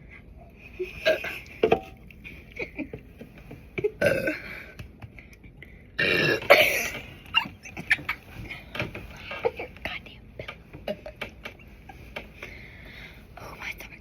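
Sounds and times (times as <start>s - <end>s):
girl burping: 4.0s - 4.5s, 6.0s - 7.0s.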